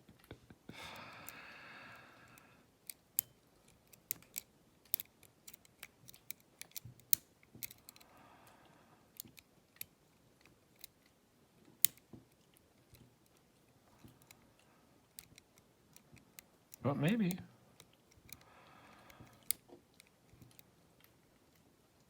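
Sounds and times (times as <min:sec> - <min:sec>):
lock pick clicking in lock: 0:02.8 - 0:08.1, 0:09.2 - 0:11.0, 0:11.8 - 0:12.1, 0:15.1 - 0:16.8.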